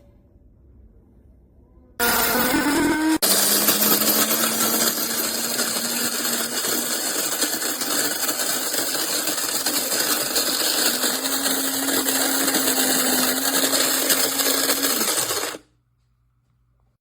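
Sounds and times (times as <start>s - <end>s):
coffee grinder grinding beans: 2.0s - 15.6s.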